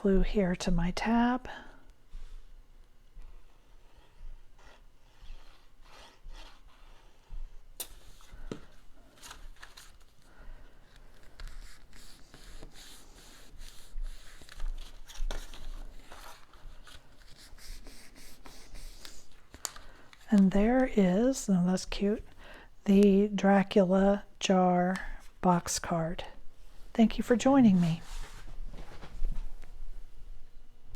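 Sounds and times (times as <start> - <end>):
cardstock rustling and rubbing: 3.6 - 10.3, 10.9 - 21.0.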